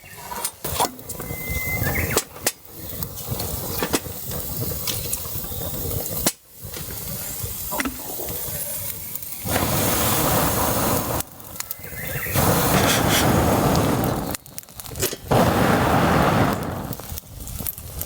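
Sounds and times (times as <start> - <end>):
water rushing hiss: 2.7 - 14.4, 15.2 - 18.0.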